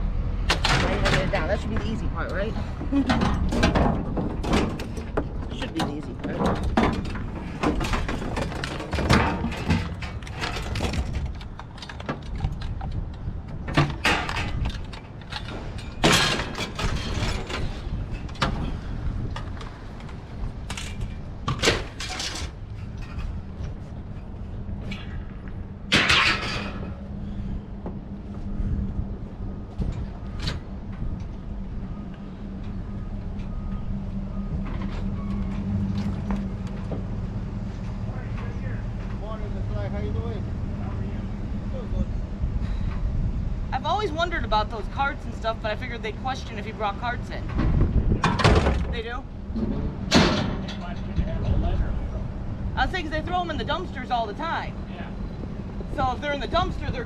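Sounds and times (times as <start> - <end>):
vehicle engine and road rumble: 0.0 - 57.0
scrap metal clanking and scraping: 2.4 - 13.0, 13.7 - 19.0, 20.6 - 25.3, 25.9 - 27.5, 47.4 - 51.7
clicks and rattles: 3.1 - 18.5.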